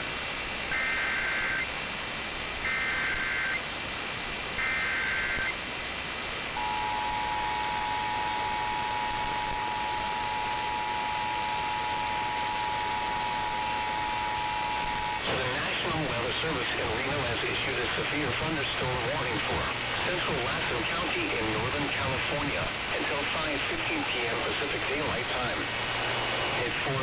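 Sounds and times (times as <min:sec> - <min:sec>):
constant background hiss: 0:00.0 - 0:27.0
digital data bursts: 0:00.7 - 0:01.7, 0:02.6 - 0:03.6, 0:04.6 - 0:05.6, 0:06.6 - 0:27.0
two-tone attention signal: 0:06.6 - 0:15.3.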